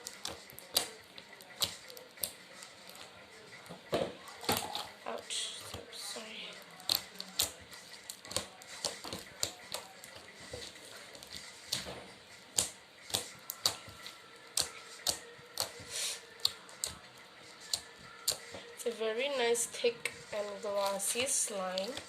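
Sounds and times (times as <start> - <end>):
slime clicking and popping: 0.0 - 2.4, 12.5 - 13.9.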